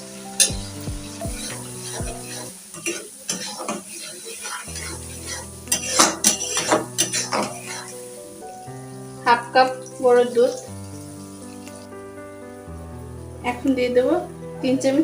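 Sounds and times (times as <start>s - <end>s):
paste sizzling in hot oil: 0.0s - 13.8s
spoon stirring and scraping: 0.4s - 8.0s.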